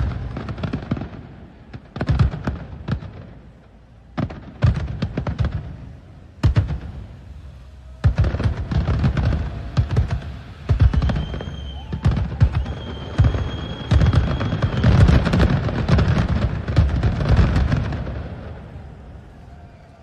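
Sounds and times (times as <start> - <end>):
fireworks crackling and booming: 0.0 - 20.0
firework high whistle: 6.4 - 16.4, 17.4 - 20.0.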